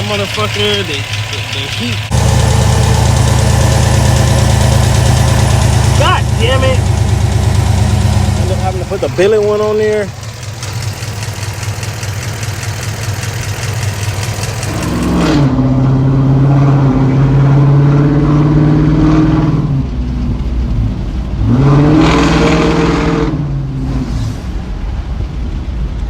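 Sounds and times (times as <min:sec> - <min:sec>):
engine idling with tick: 0:00.0 - 0:15.3
engine revving: 0:00.0 - 0:25.2.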